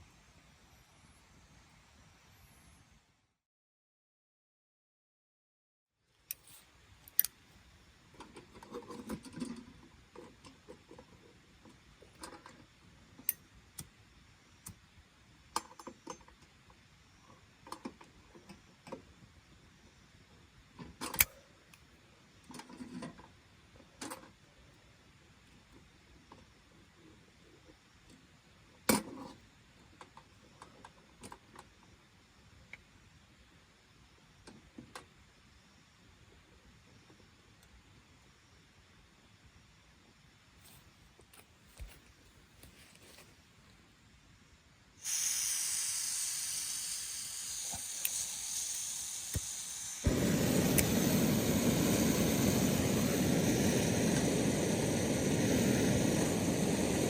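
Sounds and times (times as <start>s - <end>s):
soft rustling: 40.6s - 43.8s.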